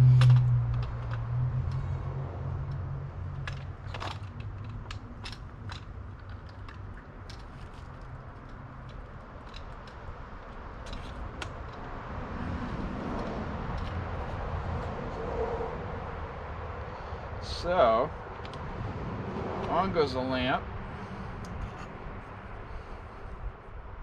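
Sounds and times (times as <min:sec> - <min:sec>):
metal bike parts clicking: 0:00.0 - 0:02.0, 0:02.7 - 0:14.9.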